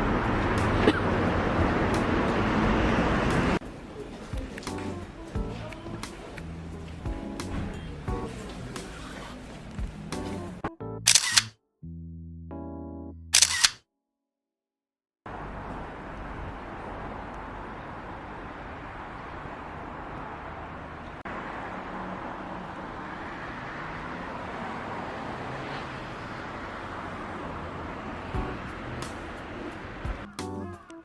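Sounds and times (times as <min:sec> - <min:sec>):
outdoor ambient noise: 0:00.0 - 0:11.5, 0:13.4 - 0:13.8, 0:15.3 - 0:31.0
camera shutter click: 0:11.1 - 0:11.5, 0:13.4 - 0:13.8.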